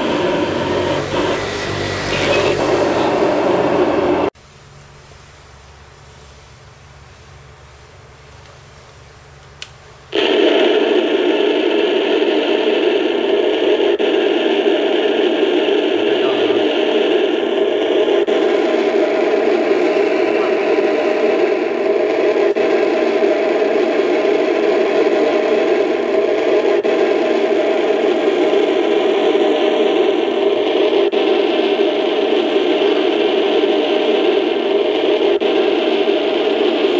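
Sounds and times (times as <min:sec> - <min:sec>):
low engine hum from speaker: 0:00.0 - 0:04.3
toy tank engine sound effect: 0:00.0 - 0:04.3, 0:10.2 - 0:36.9
click: 0:09.4 - 0:09.8.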